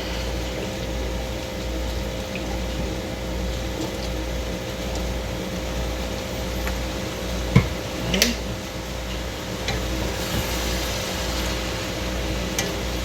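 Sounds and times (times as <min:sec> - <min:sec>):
air conditioner humming: 0:00.0 - 0:13.0
liquid pouring: 0:00.0 - 0:13.0.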